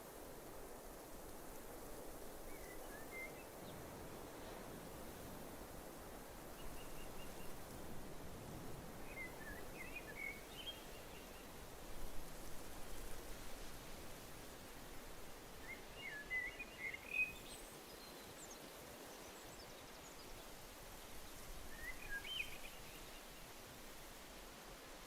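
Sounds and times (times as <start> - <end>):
faint steady hiss: 0.0 - 25.0.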